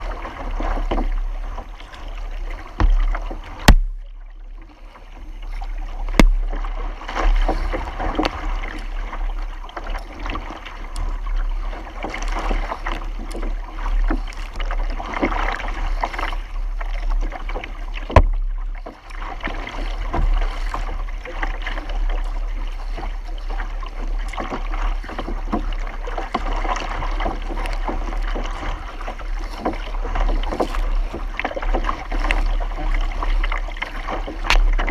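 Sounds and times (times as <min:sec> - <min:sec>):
water rushing along a hull: 0:00.0 - 0:34.9
sharp knocks: 0:03.6 - 0:04.0, 0:06.1 - 0:06.5.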